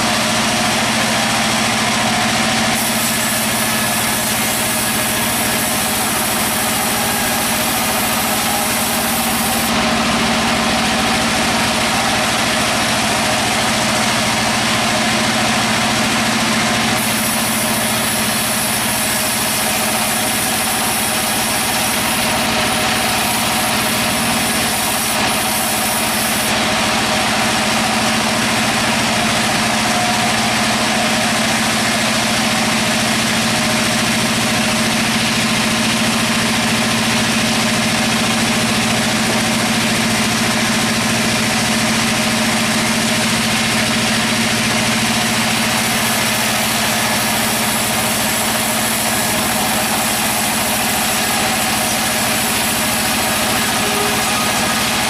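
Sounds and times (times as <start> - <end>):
sawmill machinery humming: 0.0 - 55.0
sharp high hiss: 2.8 - 9.7, 17.0 - 26.5.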